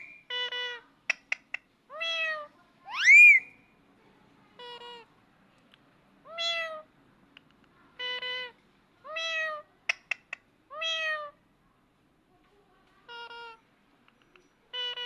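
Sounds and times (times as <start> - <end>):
parrot imitating cat meow: 1.9 - 3.4, 6.2 - 6.9, 8.0 - 10.1, 10.7 - 11.4, 14.7 - 15.0.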